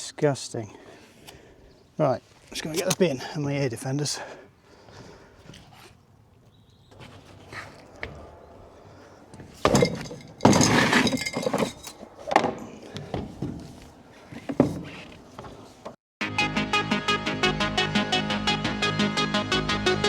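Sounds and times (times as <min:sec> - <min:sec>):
hard objects clattering and dropping: 0:09.4 - 0:13.6.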